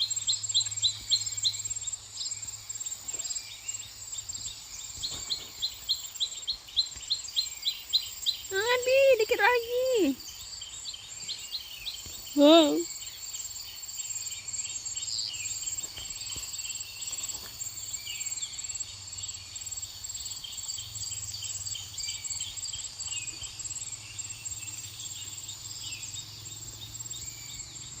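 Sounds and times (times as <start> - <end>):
insects trilling: 0.0 - 28.0.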